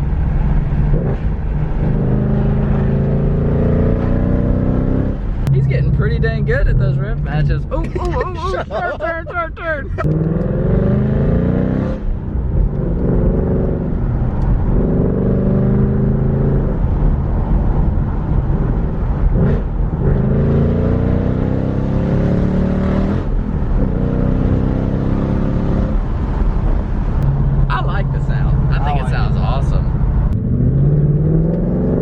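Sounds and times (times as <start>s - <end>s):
car engine accelerating: 0.0s - 32.0s.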